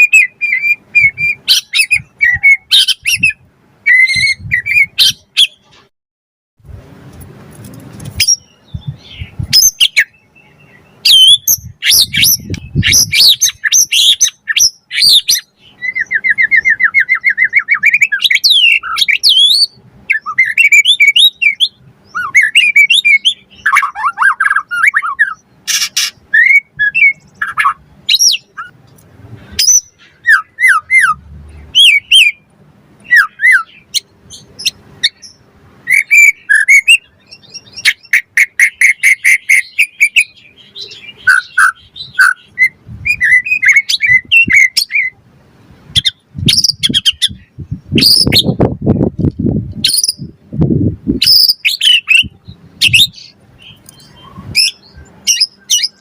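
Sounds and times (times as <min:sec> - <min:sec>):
bird singing: 0:00.0 - 0:05.8, 0:08.2 - 0:28.8, 0:29.6 - 0:45.2, 0:46.0 - 0:48.6, 0:51.2 - 0:56.0.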